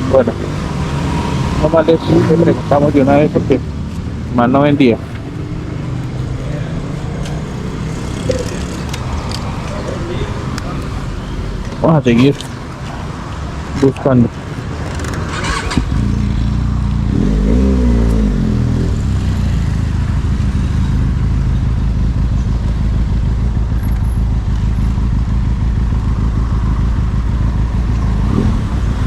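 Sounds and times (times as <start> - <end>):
motorcycle engine running: 5.1 - 11.8, 14.7 - 29.0.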